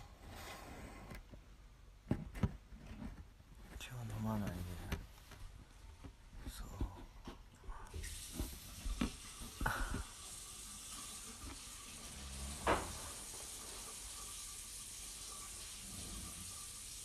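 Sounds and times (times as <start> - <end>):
water running from a tap: 7.9 - 17.0.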